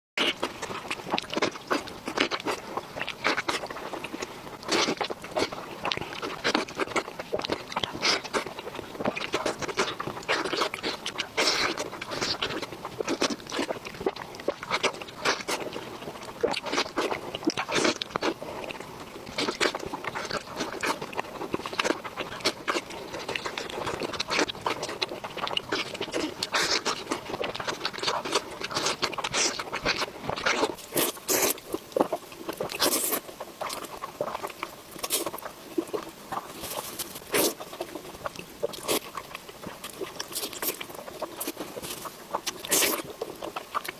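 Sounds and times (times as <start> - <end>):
person chewing food: 0.2 - 43.9.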